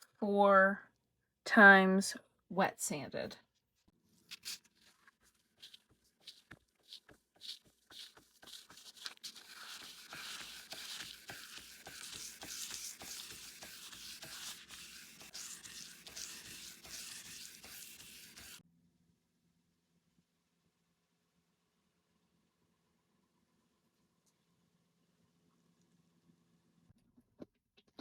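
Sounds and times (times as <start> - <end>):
sandpaper rubbing a surface: 4.3 - 18.6.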